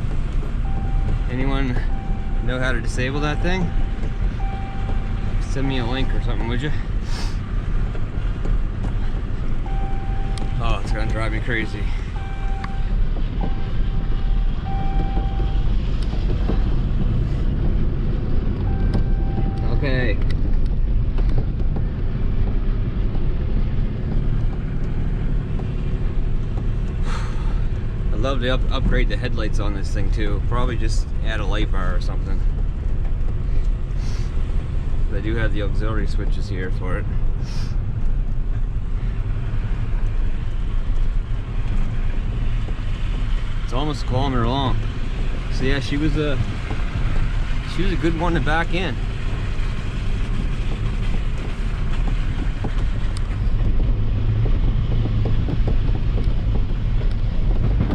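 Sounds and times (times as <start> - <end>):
engine and road rumble: 0.0 - 57.9
seatbelt warning chime: 9.7 - 15.7.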